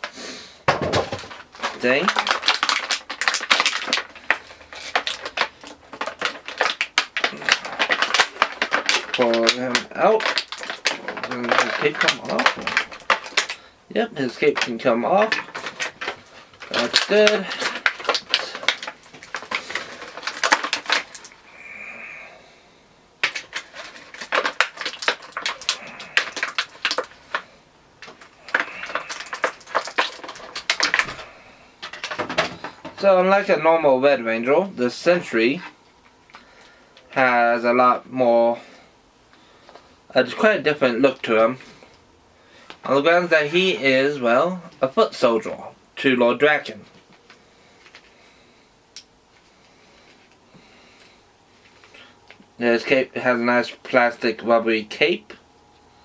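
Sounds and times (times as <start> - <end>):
plastic packaging crackling: 0.0 - 22.6, 23.2 - 38.7, 39.3 - 55.4
hard plastic clicks and rattles: 0.7 - 13.6, 14.4 - 21.4, 23.2 - 31.2.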